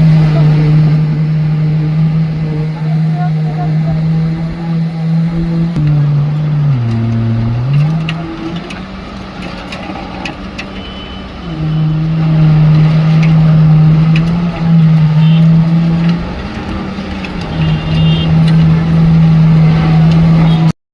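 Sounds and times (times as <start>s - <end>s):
diesel engine running under load: 0.0s - 20.7s.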